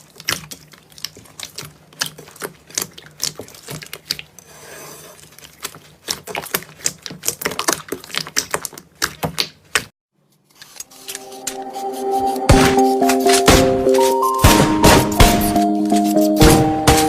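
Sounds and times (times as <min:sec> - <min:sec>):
background music: 0:10.9 - 0:17.0.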